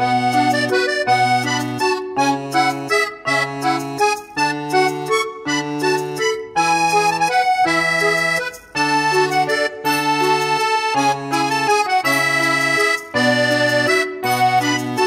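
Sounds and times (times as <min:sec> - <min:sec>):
bouncy accordion tune: 0:00.0 - 0:15.0.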